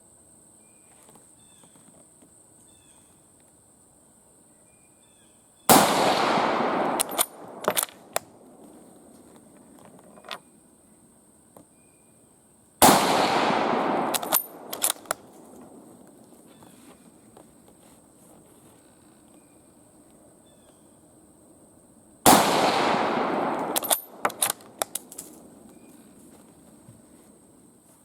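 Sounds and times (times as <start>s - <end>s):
rifle shots with echo: 5.7s - 9.1s, 12.8s - 16.2s, 22.2s - 25.7s
rifle bolt clicks: 6.2s - 8.3s, 13.0s - 15.8s, 22.5s - 25.4s.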